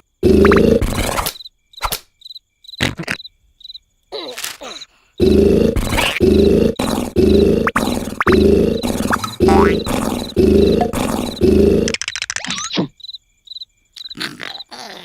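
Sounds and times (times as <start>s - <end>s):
crickets chirping: 0.0s - 15.0s
cartoon rasping snore: 0.2s - 1.2s, 4.6s - 12.0s.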